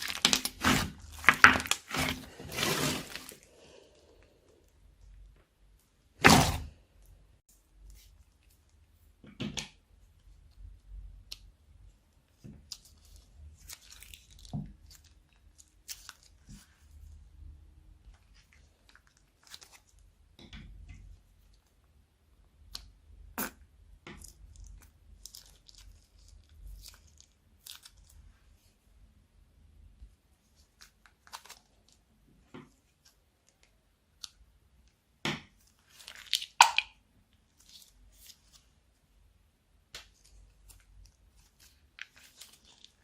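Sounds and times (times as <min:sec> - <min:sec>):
slime clicking and popping: 0:36.2 - 0:37.0.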